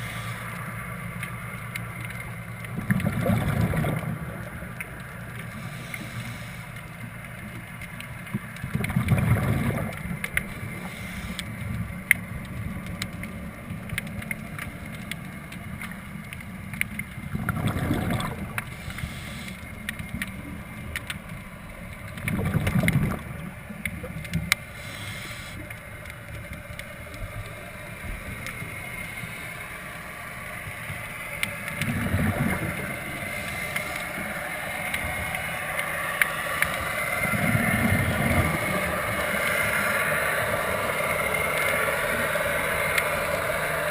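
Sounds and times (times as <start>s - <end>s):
low underwater rumble: 0.2s - 43.9s
diver's breath bubbles underwater: 2.8s - 4.4s, 8.7s - 10.2s, 17.3s - 19.5s, 22.2s - 24.1s, 31.7s - 34.0s.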